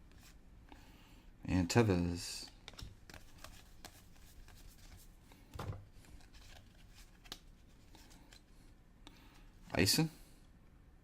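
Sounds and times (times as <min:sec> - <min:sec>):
trading cards clicking and rustling: 0:02.4 - 0:05.0.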